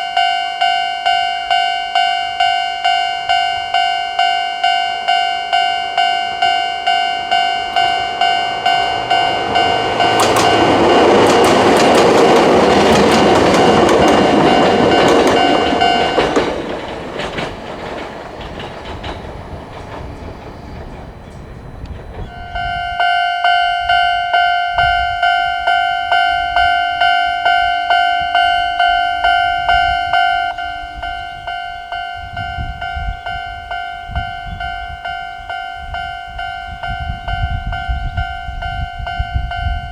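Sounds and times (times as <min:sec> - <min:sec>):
level crossing alarm ringing: 0:00.0 - 0:39.9
train wheels clicking over rails: 0:00.6 - 0:39.9.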